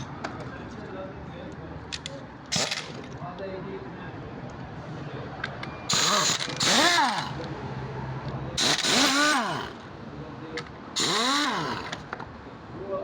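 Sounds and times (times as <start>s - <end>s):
car engine revving: 8.6s - 9.9s, 11.0s - 12.1s.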